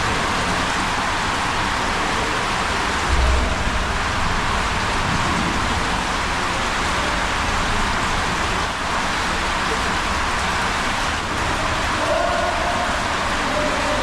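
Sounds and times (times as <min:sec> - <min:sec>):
water rushing on waterslide: 0:00.0 - 0:14.0
low thump: 0:03.1 - 0:05.8.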